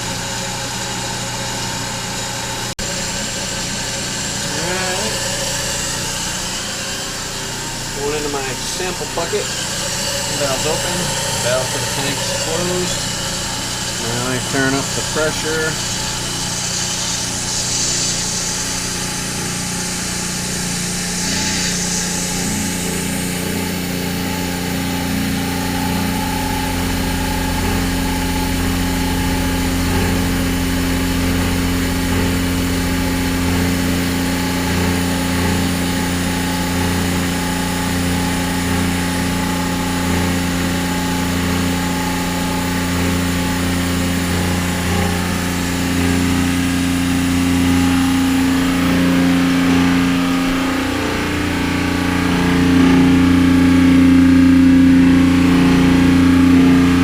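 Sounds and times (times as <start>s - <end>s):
watermaker mechanical hum: 0.0s - 57.0s
hiss: 16.3s - 23.9s.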